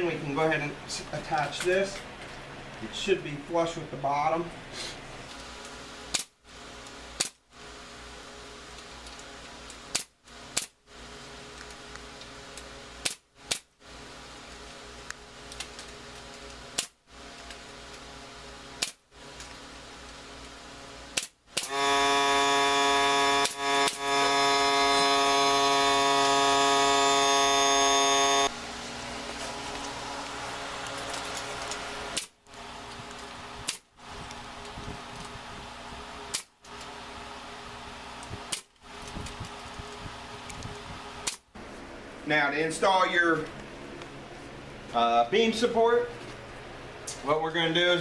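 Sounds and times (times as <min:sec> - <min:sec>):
pneumatic nailer firing: 0:06.1 - 0:06.4, 0:07.2 - 0:07.4, 0:09.9 - 0:10.8, 0:13.0 - 0:13.7, 0:18.8 - 0:19.0, 0:21.1 - 0:28.5, 0:32.1 - 0:32.4, 0:33.6 - 0:33.9, 0:36.3 - 0:36.5, 0:38.5 - 0:38.7, 0:41.2 - 0:41.4
loud motor hum: 0:21.7 - 0:32.8.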